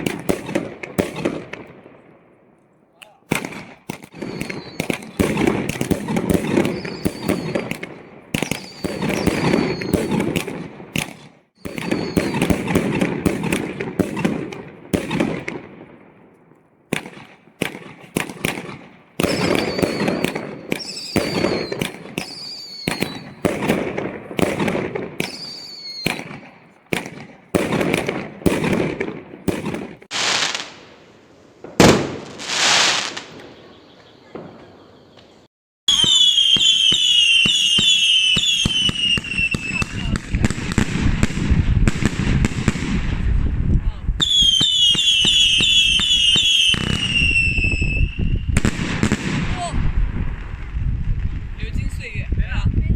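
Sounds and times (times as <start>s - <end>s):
fireworks bangs and crackling: 0.0s - 2.3s, 3.0s - 52.9s
falling firework whistles: 4.1s - 5.2s, 6.3s - 10.4s, 11.6s - 12.8s, 19.2s - 23.4s, 25.2s - 26.3s, 30.1s - 31.0s, 31.7s - 40.1s, 44.2s - 48.8s
hissing rushes: 30.1s - 31.0s.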